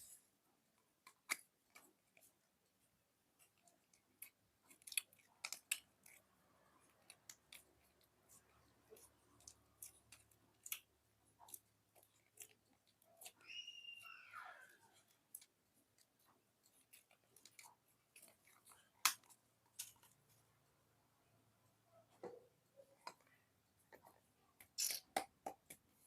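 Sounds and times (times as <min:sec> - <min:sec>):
wet clicks and crackles: 0:03.4 - 0:13.6, 0:14.9 - 0:20.2.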